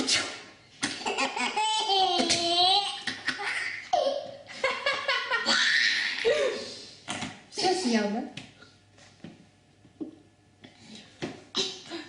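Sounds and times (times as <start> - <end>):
small child laughing: 0.9 - 6.7.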